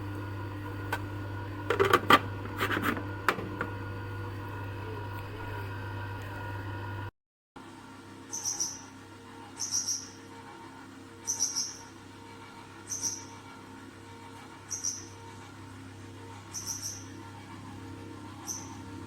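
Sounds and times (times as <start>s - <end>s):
ice cream maker humming: 0.0s - 7.1s, 15.2s - 19.0s.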